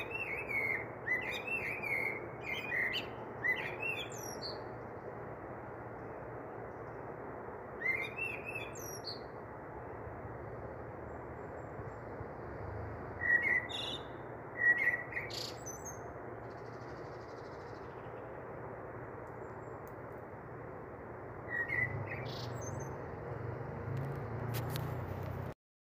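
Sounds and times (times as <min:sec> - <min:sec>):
bird chirps: 0:00.0 - 0:04.7, 0:07.8 - 0:09.3, 0:13.2 - 0:18.4, 0:21.5 - 0:23.0
steady background hiss: 0:00.0 - 0:24.5.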